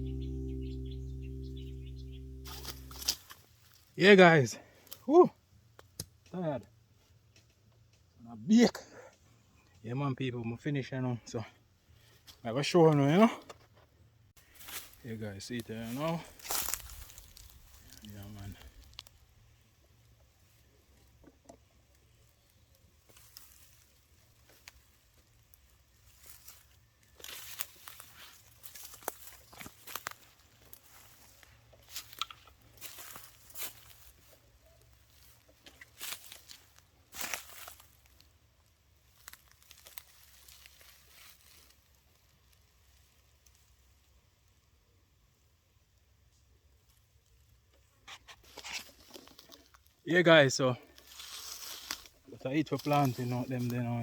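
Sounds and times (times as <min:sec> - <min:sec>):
low hum: 0:00.0 - 0:03.1
dry vegetation rustling and crunching: 0:14.4 - 0:19.3, 0:22.1 - 0:43.7, 0:48.4 - 0:50.0, 0:50.9 - 0:54.0.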